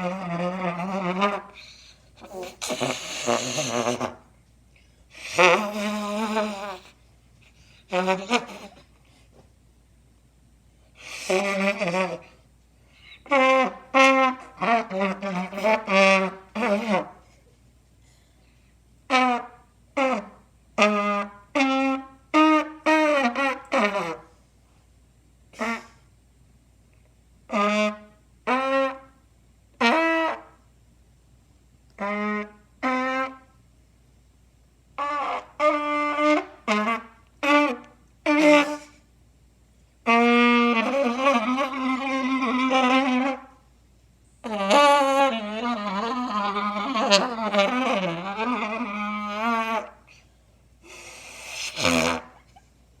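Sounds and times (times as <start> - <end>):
trumpet blasts: 13.2 - 17.2, 19.1 - 24.3, 25.6 - 26.0, 27.5 - 29.2, 29.8 - 30.6, 32.0 - 33.6, 35.0 - 39.0, 40.0 - 43.7, 44.4 - 50.0, 51.4 - 52.4
trumpet notes with wobbling pitch: 27.5 - 29.1, 32.0 - 33.5, 40.1 - 43.6.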